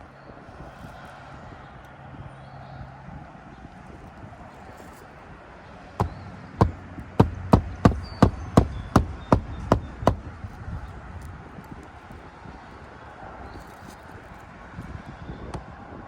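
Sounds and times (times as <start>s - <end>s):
hatchet striking roofing nails: 6.0s - 10.9s.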